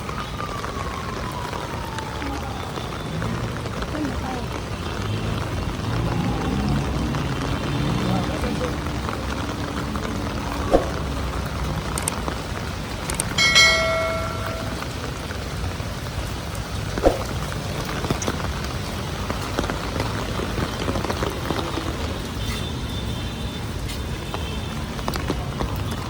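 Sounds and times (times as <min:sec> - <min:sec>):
heavy rain: 0:00.0 - 0:26.0
sharp drips: 0:16.5 - 0:26.0.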